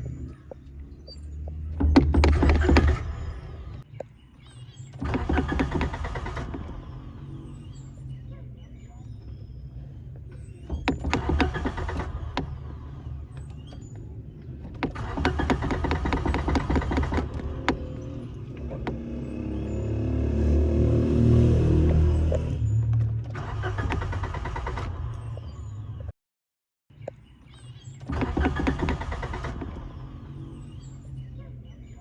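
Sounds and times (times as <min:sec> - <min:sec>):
starter motor cranking engine: 0:01.7 - 0:03.8, 0:04.9 - 0:08.0, 0:10.2 - 0:25.4, 0:28.0 - 0:31.0
engine running unevenly: 0:04.9 - 0:25.5.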